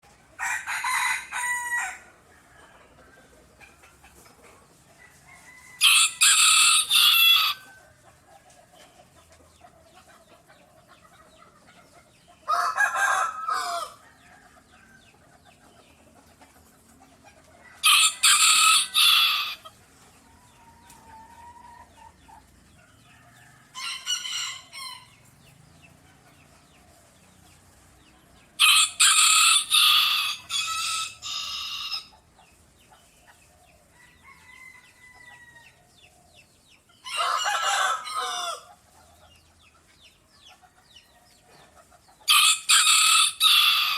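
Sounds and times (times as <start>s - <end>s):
chicken clucking: 0.0s - 43.9s
rooster crowing: 0.4s - 2.8s, 5.0s - 7.7s, 12.5s - 14.9s, 17.8s - 19.6s, 28.6s - 32.1s, 34.0s - 35.8s, 37.0s - 38.7s, 42.3s - 43.9s.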